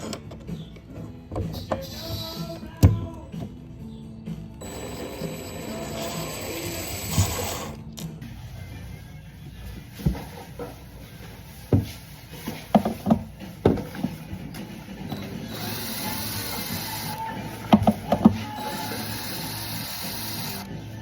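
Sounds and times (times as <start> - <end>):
screwdriver clicking on wood: 15.1 - 20.7.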